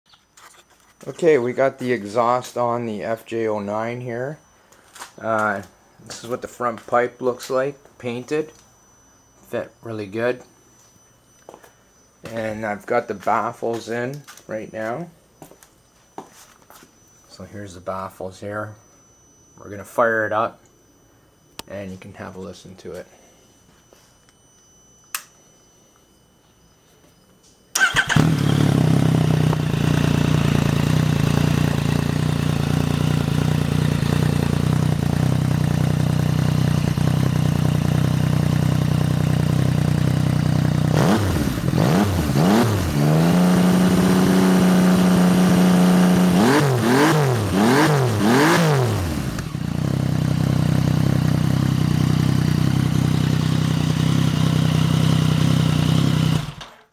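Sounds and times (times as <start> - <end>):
motorcycle engine idling and revving: 27.8 - 56.8.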